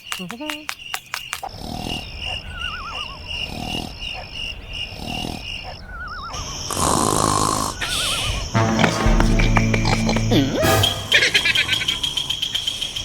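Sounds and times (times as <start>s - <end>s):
pulsing cricket-like chirp: 0.0s - 13.0s
cartoon snoring with whistle: 6.1s - 12.4s.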